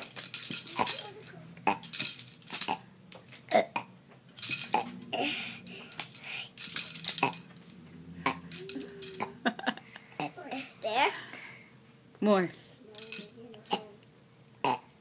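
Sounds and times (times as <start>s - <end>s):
hard objects clinking together: 0.0s - 3.4s, 4.4s - 5.1s, 5.7s - 7.8s, 8.4s - 9.3s, 12.9s - 13.8s.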